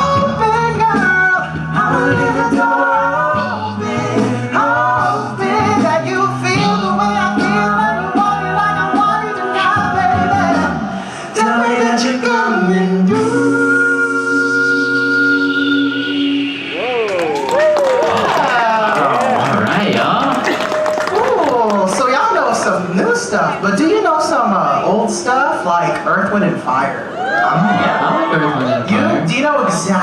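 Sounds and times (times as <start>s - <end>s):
male group singing in harmony: 0.0s - 16.8s.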